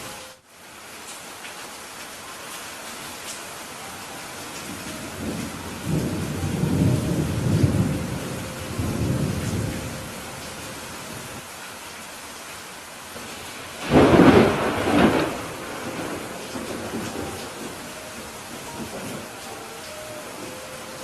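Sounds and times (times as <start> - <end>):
heavy rain hissing: 0.0 - 21.0
low rolling thunder: 4.6 - 11.4, 13.3 - 21.0
loud thunder crack: 13.8 - 17.8.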